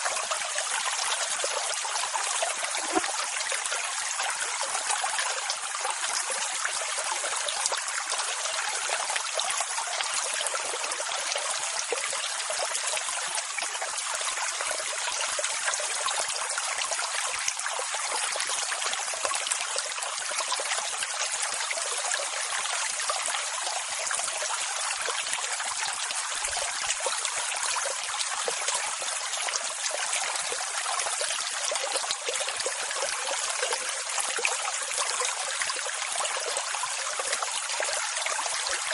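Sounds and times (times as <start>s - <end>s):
rushing water: 0.0s - 38.9s.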